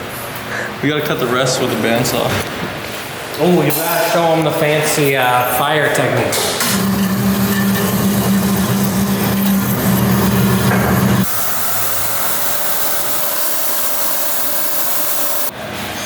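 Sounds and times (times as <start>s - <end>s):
bandsaw humming: 6.6s - 15.5s
machine hiss: 6.6s - 15.5s.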